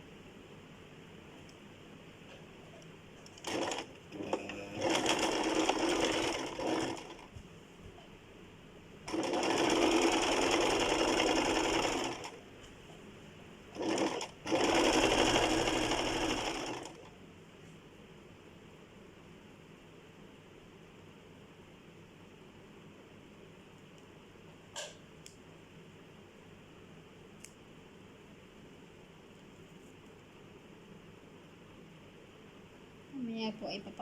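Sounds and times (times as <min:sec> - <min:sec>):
sewing machine stitching: 0:03.3 - 0:07.3, 0:09.1 - 0:12.4, 0:13.8 - 0:17.1.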